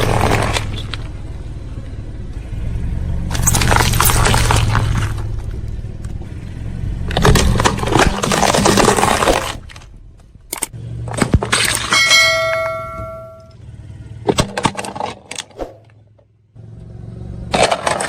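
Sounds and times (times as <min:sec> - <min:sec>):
tyre crushing brittle objects: 0:00.0 - 0:01.1, 0:03.3 - 0:05.4, 0:07.1 - 0:09.9
low engine rumble: 0:00.0 - 0:18.0
ringing of clear tones: 0:11.9 - 0:13.6.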